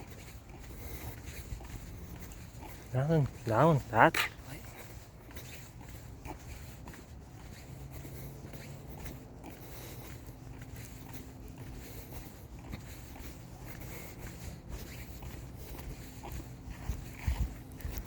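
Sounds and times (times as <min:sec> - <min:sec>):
rustling and scuffing: 0:00.0 - 0:18.0.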